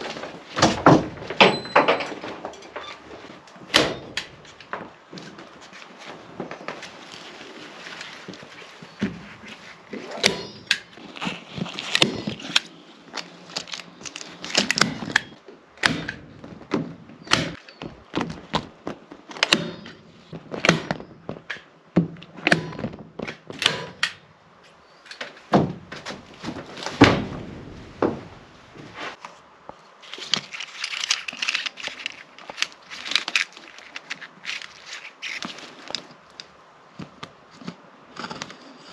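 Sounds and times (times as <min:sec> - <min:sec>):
rustling: 0:00.0 - 0:15.5, 0:24.6 - 0:38.9.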